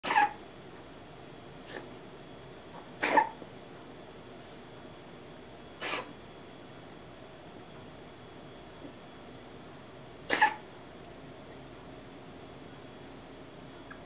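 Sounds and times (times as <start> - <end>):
cat coughing: 0.0 - 0.4, 3.0 - 3.4, 5.8 - 6.2, 10.3 - 10.7.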